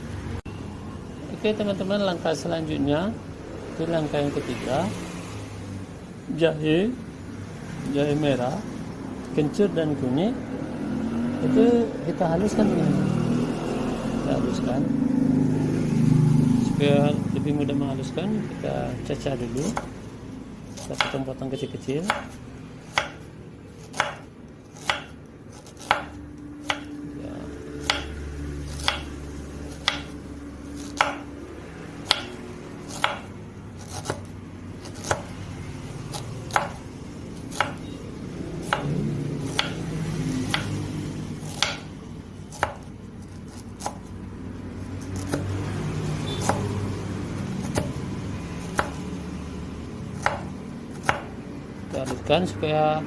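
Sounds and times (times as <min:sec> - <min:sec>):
knife chopping roots: 0:19.6 - 0:20.0, 0:20.7 - 0:21.3, 0:21.9 - 0:27.0, 0:27.8 - 0:31.3, 0:32.0 - 0:35.4, 0:36.0 - 0:37.9, 0:38.6 - 0:44.2, 0:44.9 - 0:49.1, 0:50.1 - 0:52.5.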